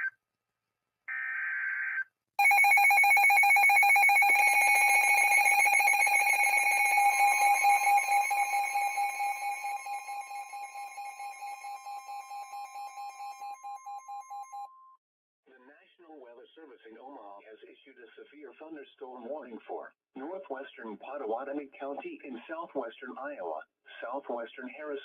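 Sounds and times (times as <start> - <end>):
steady tone: 2.4 - 12.5
pulsing alarm tone: 2.4 - 14.7.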